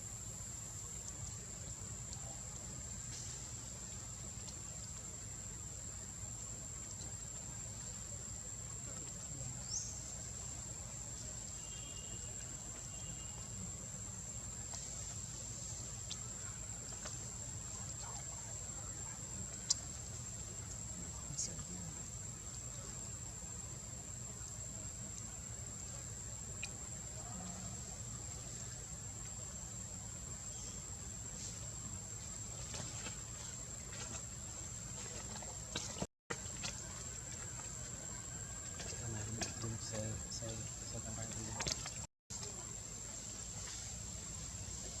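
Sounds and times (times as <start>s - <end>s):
insects buzzing: 0.0s - 45.0s
faint clicks: 26.6s - 26.8s.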